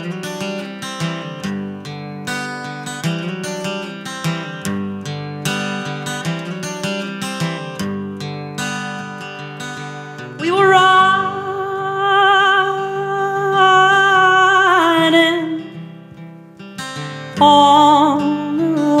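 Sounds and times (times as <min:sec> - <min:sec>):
acoustic guitar: 0:00.0 - 0:19.0
person singing: 0:10.4 - 0:15.9, 0:17.3 - 0:19.0.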